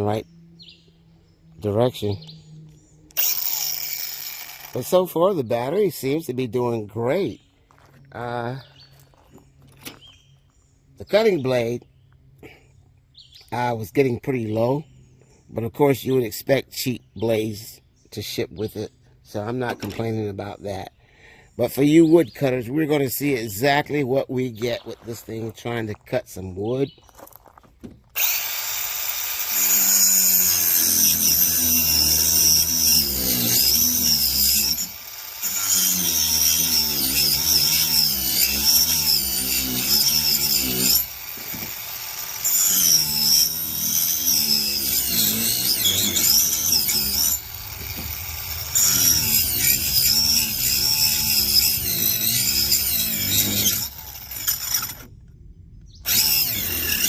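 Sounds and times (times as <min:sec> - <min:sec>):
man talking: 0:01.6 - 0:02.2, 0:04.8 - 0:07.4, 0:21.6 - 0:27.0
angle grinder cutting wood: 0:03.1 - 0:06.2, 0:28.1 - 0:55.1, 0:56.0 - 0:57.0.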